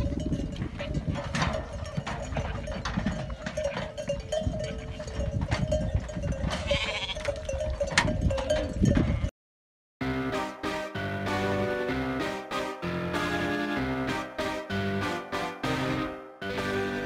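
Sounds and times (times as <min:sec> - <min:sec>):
sheep bells clanking: 0:00.0 - 0:09.3
sheep bleating: 0:06.6 - 0:07.3.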